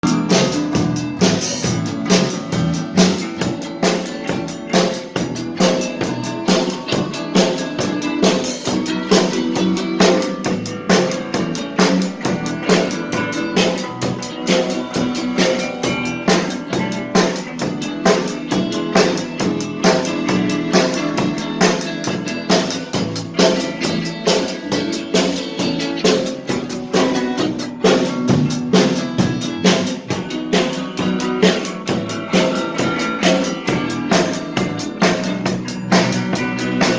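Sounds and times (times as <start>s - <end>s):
band playing: 0.0s - 36.9s
drum kit beat: 0.0s - 36.9s.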